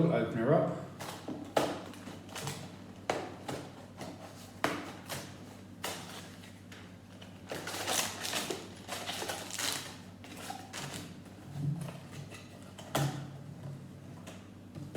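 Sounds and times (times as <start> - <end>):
card and packaging rustling: 4.0 - 11.2.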